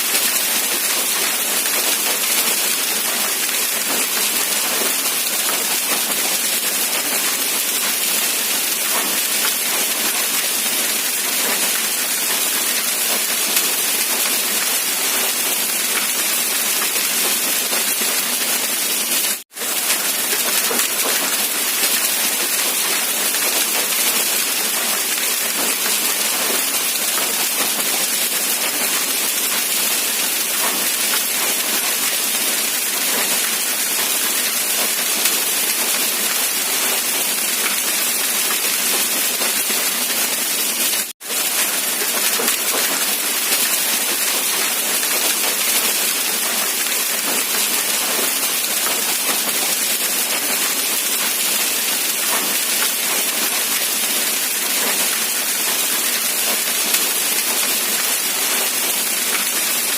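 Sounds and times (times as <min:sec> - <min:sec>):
steady rain: 0:00.0 - 0:59.9.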